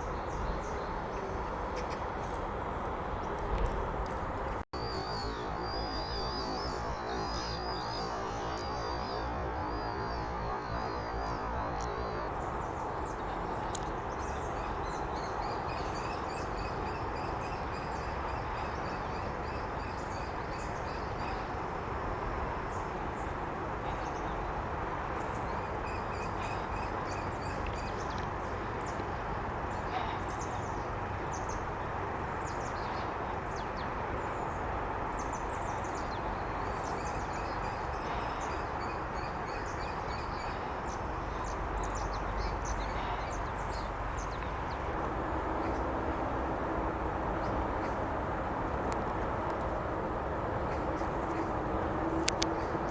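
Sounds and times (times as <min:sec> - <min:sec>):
birds chirping: 0:00.0 - 0:08.0, 0:12.3 - 0:46.2.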